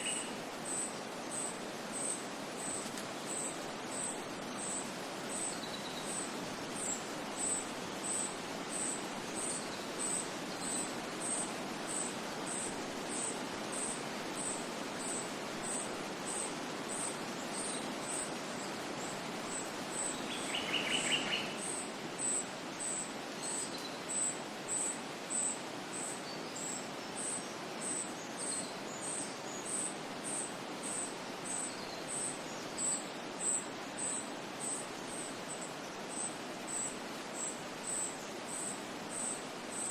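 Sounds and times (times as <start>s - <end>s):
faint bird calls: 0.0s - 1.5s, 19.5s - 28.1s
insect chirping: 0.0s - 18.3s, 19.5s - 39.9s.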